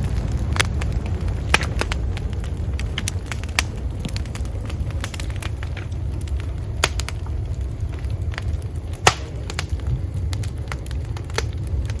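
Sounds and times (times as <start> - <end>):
campfire crackling and popping: 0.0 - 12.0
steady low rumble: 0.0 - 12.0.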